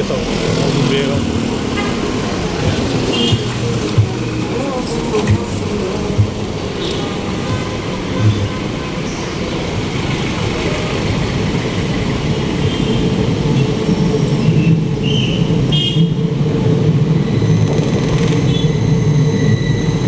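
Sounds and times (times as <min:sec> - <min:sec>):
road traffic rumble: 0:00.0 - 0:20.0
vehicle horn toots: 0:01.6 - 0:09.4, 0:12.6 - 0:13.7, 0:15.1 - 0:16.3.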